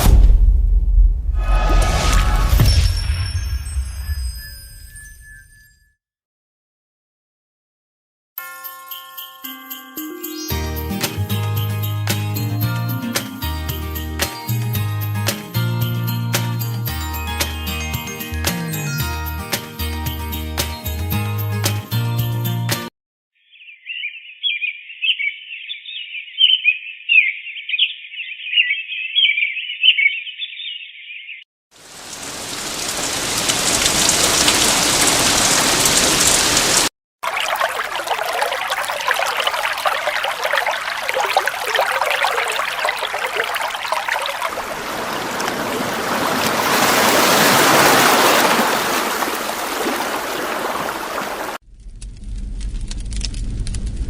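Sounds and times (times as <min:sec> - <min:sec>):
rushing water-like noise: 0:31.8 - 0:51.6.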